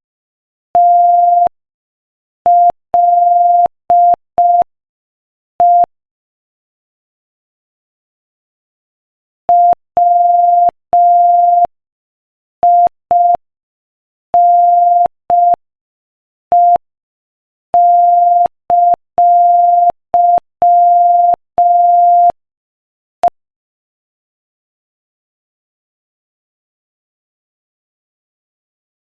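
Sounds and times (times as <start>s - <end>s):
morse code beeps: 5.6s - 5.9s, 16.6s - 16.8s, 17.8s - 22.4s.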